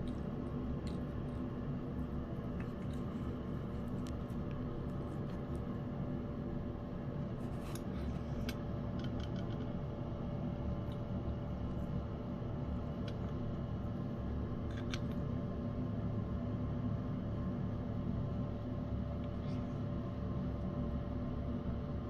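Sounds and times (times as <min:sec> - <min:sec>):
cat chewing and licking: 0:00.0 - 0:09.7
low steady hum: 0:00.0 - 0:22.0.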